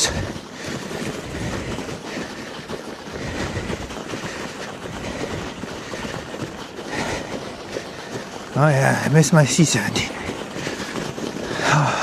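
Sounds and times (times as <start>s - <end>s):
bicycle rattling: 0.0s - 12.0s
bicycle tyres crunching snow: 0.0s - 12.0s.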